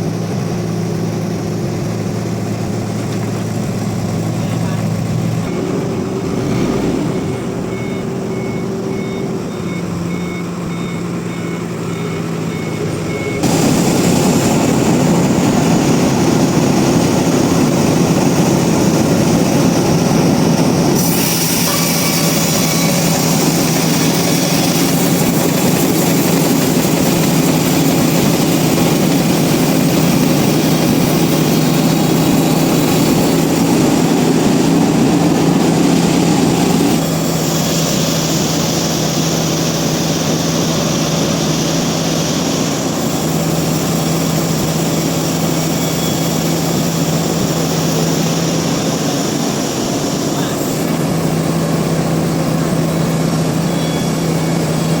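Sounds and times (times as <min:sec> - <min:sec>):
sawmill machinery running: 0:00.0 - 0:55.0
short high beeps: 0:06.4 - 0:13.4, 0:53.6 - 0:54.3.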